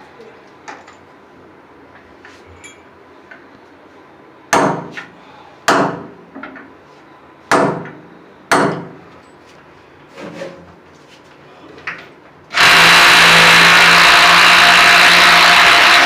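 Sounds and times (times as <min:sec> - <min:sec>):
hammer striking with ring: 0:07.5 - 0:09.0.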